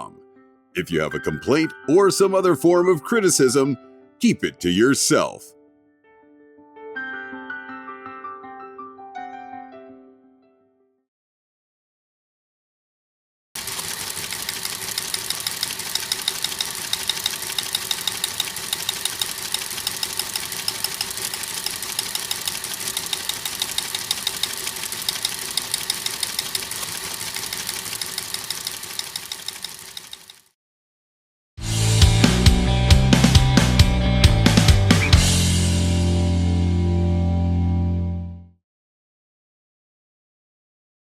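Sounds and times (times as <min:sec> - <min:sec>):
rapid mechanical clatter: 0:13.6 - 0:30.5.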